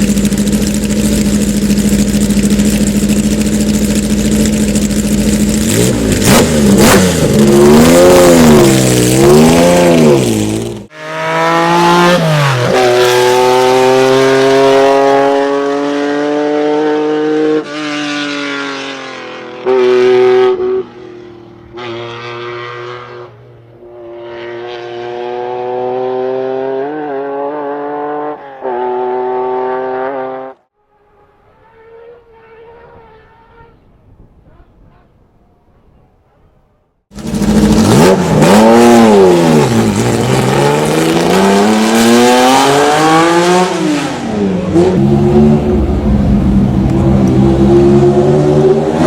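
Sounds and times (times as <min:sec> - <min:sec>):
engine running at high revs: 0:00.0 - 0:20.9, 0:37.2 - 0:49.0
faint engine sound: 0:44.4 - 0:48.9.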